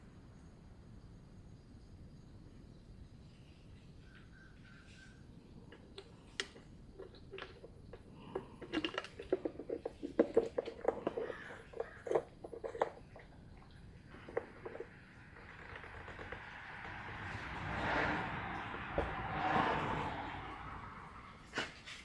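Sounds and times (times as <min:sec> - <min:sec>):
small parts clicking and rattling: 0:06.2 - 0:17.4.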